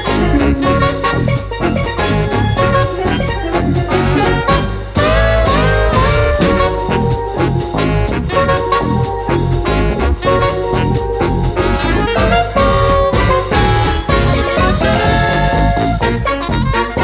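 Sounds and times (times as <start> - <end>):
upbeat swing music with brass: 0.0 - 17.0.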